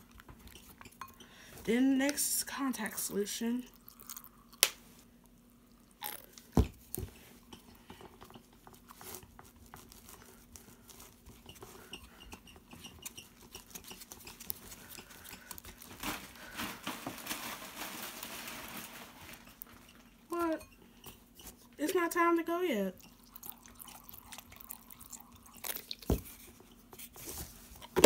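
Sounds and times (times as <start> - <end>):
utensil stirring wet slime: 0.0 - 6.5, 7.1 - 16.5, 19.4 - 28.0.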